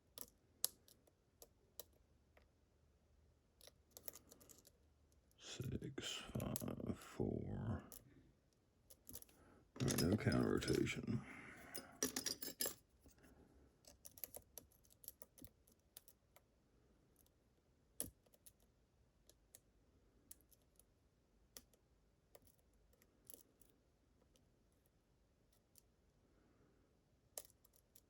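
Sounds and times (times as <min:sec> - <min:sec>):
lock pick clicking on pins: 0:27.4 - 0:28.0.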